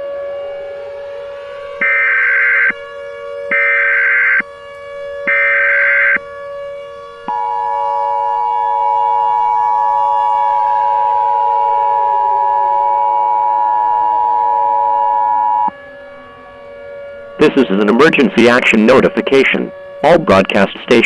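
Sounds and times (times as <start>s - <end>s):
siren winding down: 0.0s - 21.0s
steady siren tone: 0.0s - 21.0s.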